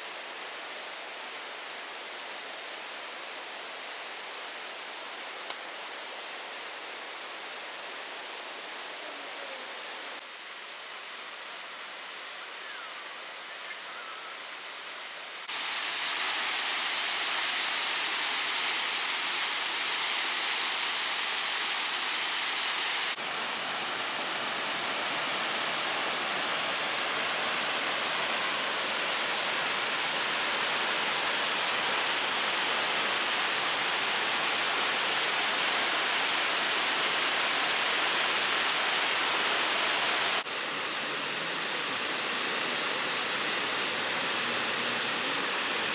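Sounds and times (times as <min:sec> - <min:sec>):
waterfall rushing: 0:15.4 - 0:24.1.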